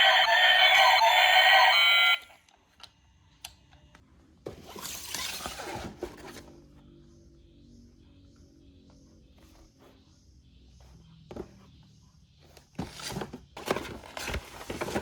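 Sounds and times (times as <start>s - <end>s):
electronic toy tones: 0.0s - 2.3s.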